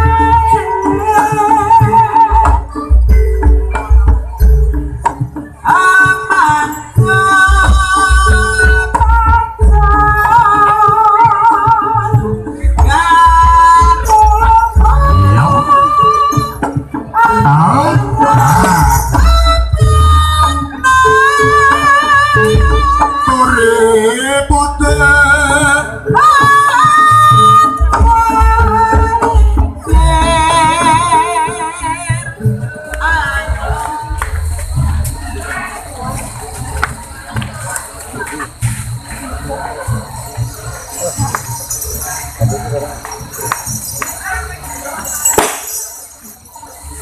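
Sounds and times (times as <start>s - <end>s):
wavering high melody: 0.0s - 32.2s.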